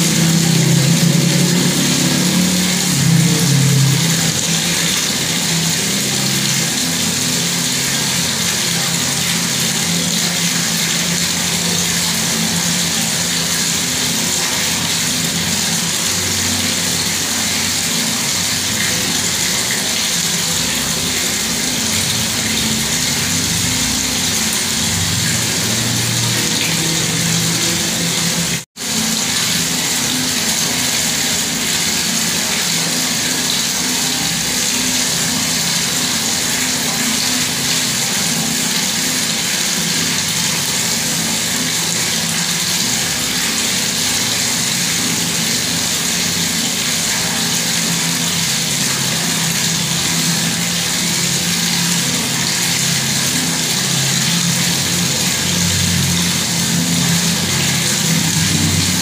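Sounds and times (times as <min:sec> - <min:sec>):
low hum: 0:00.0 - 0:06.8
water tap running: 0:00.0 - 0:59.0.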